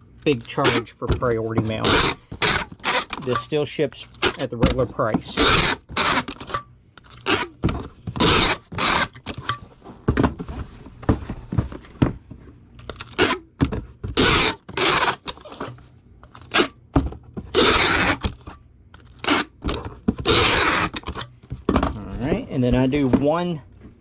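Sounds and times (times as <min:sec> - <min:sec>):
tape scraping and tearing: 0:00.3 - 0:01.0, 0:01.6 - 0:09.6, 0:12.8 - 0:16.8, 0:17.5 - 0:21.3
cardboard boxes being folded: 0:19.0 - 0:23.0.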